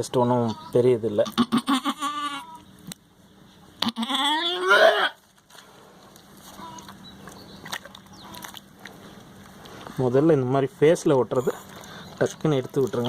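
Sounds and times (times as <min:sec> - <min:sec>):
goat bleating: 0:00.4 - 0:02.7, 0:03.8 - 0:05.2, 0:06.4 - 0:07.0.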